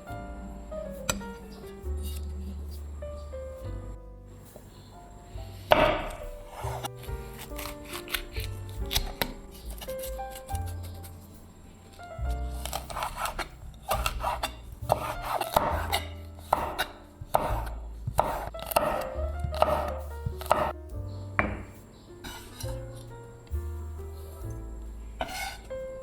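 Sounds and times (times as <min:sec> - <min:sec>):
background music with bass line: 0:00.0 - 0:26.0
knife chopping on cutting board: 0:05.7 - 0:06.9, 0:07.5 - 0:11.1, 0:12.6 - 0:20.8, 0:21.4 - 0:22.8.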